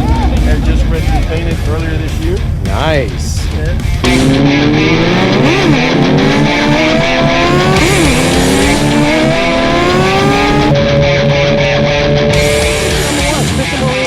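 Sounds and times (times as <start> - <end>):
motorcycle engine accelerating: 0.0 - 14.0
rock music with guitar: 0.0 - 14.0.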